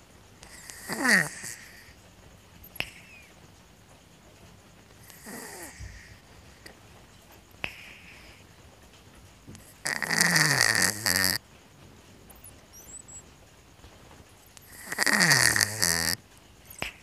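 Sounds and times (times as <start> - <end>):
cat snoring: 0.4 - 2.0, 5.0 - 6.7, 9.5 - 11.4, 14.5 - 17.0.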